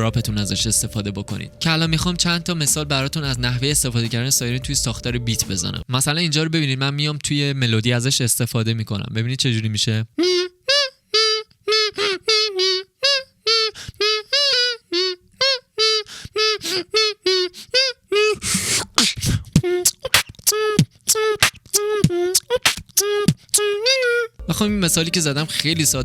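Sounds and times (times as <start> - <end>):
beatbox siren notes: 16.6 - 26.0
beatbox kick and snare hits: 19.0 - 23.6.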